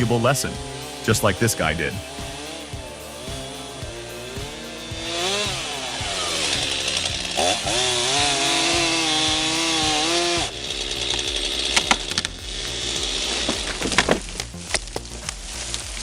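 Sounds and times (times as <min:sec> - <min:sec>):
chainsaw engine running: 0:00.0 - 0:16.0
crackling with sharp cracks: 0:11.0 - 0:16.0.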